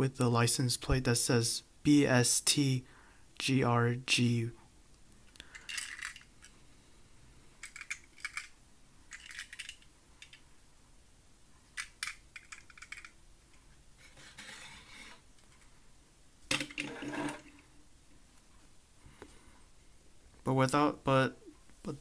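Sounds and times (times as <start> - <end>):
metal toy car clicking: 7.6 - 8.5, 11.8 - 13.2
knock and scrape: 14.0 - 15.2, 16.6 - 17.6.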